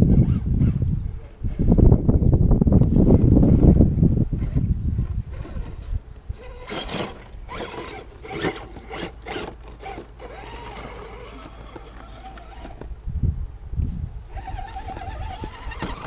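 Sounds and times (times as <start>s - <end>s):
rc truck motor whirring: 0.0s - 0.8s, 3.5s - 13.0s, 14.3s - 16.0s
drivetrain clicks: 4.5s - 13.0s.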